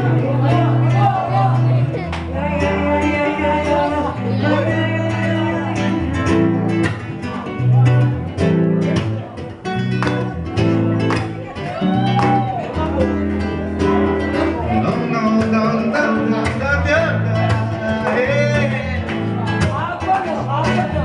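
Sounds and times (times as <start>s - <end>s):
held bass notes: 0.0s - 21.0s
strummed acoustic guitar: 0.0s - 21.0s.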